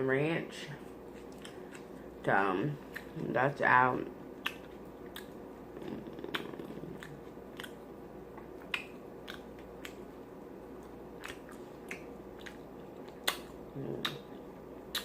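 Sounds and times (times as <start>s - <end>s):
person chewing: 0.9s - 2.2s, 2.8s - 3.2s, 4.2s - 15.0s
wet mouth smacking clicks: 4.4s - 7.8s, 8.6s - 10.0s, 11.2s - 14.3s.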